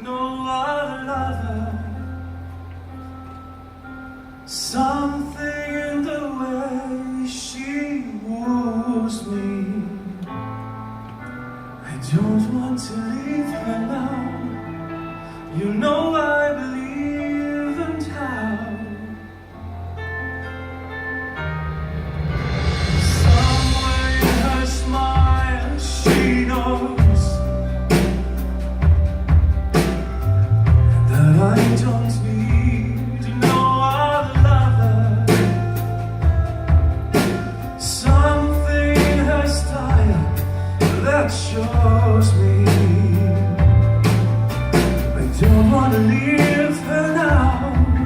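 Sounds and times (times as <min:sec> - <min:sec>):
man singing slow melody: 0:00.0 - 0:02.6, 0:04.4 - 0:10.8, 0:11.8 - 0:19.9, 0:23.0 - 0:29.1, 0:30.2 - 0:36.4, 0:37.1 - 0:44.3, 0:45.1 - 0:48.0
band with sustained bass: 0:00.0 - 0:48.0
drum hits: 0:21.8 - 0:31.8.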